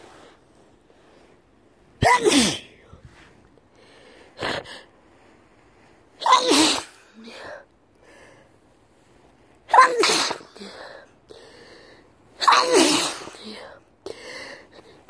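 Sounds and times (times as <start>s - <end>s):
man sneezing: 2.0s - 2.7s, 9.7s - 10.6s, 12.4s - 13.4s.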